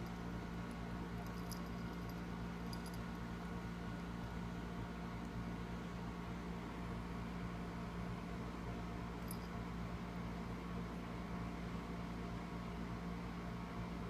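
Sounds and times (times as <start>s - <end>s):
low hum with hiss: 0.0s - 14.0s.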